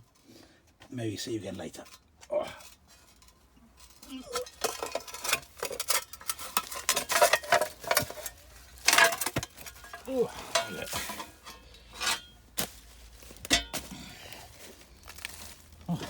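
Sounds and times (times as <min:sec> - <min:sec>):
scraping and clinking of rubble: 0:01.8 - 0:16.0
scrapes and knocks on concrete: 0:02.8 - 0:13.9.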